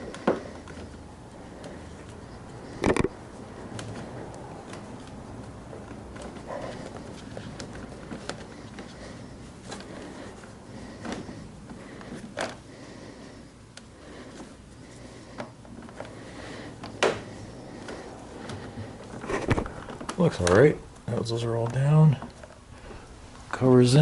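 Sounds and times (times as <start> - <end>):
clicks and knocks of parts handled: 2.8 - 5.2.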